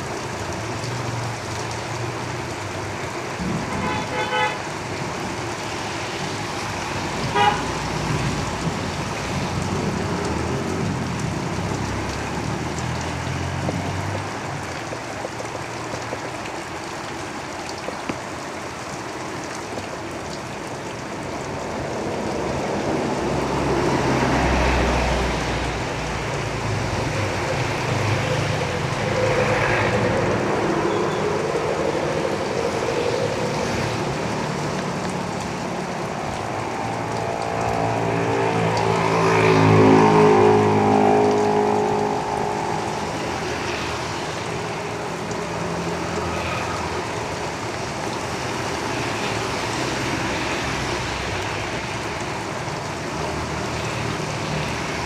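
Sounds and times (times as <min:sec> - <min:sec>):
rain on a roof: 0:00.0 - 0:55.0
road traffic passing: 0:00.0 - 0:55.0
vehicles rumbling past: 0:00.0 - 0:55.0
vehicle horn toot: 0:03.7 - 0:04.6, 0:07.3 - 0:07.7.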